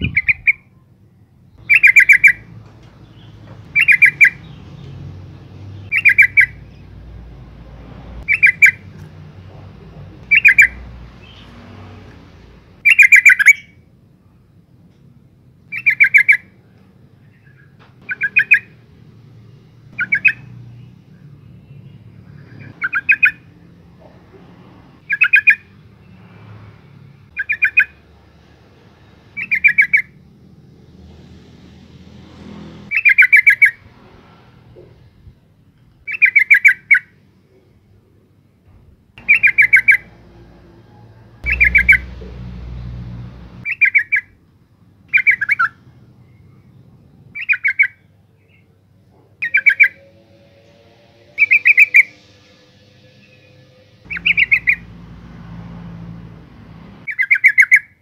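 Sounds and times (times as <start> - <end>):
bird chattering calls: 1.6 - 2.5, 3.7 - 4.4, 5.9 - 6.6, 8.3 - 8.8, 10.2 - 11.4, 39.2 - 40.1, 41.4 - 42.2, 54.1 - 54.9.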